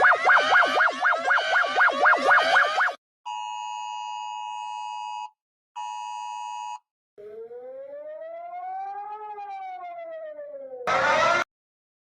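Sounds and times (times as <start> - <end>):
siren wail: 0.0 - 3.0, 7.2 - 11.5.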